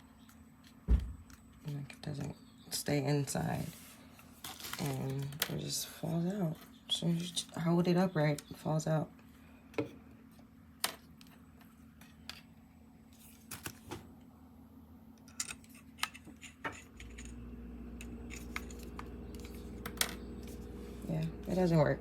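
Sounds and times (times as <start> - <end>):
milk frother motor humming: 16.4 - 22.0.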